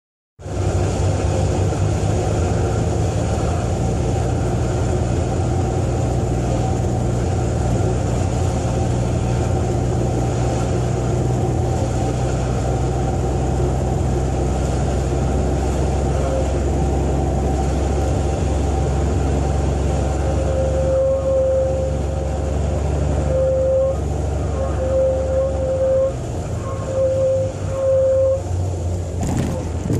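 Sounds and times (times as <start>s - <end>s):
propeller plane engine running: 0.4s - 24.8s, 28.4s - 29.9s
warning horn tone: 16.1s - 16.7s, 20.0s - 28.6s.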